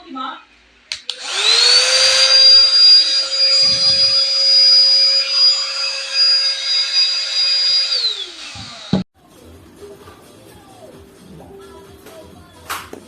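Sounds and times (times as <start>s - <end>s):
mini vacuum cleaner motor whine: 1.1s - 9.1s.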